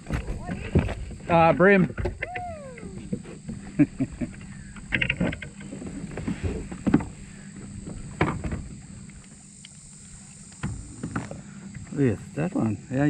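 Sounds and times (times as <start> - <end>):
knocks and rattles on kayak: 0.0 - 9.0.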